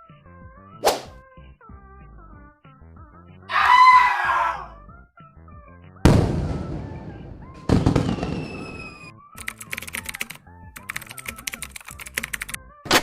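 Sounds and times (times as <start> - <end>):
faint background music: 0.0 - 13.0
crash: 6.1 - 9.1
loud blast: 6.1 - 9.1
rapid clicking like typing: 9.4 - 12.6.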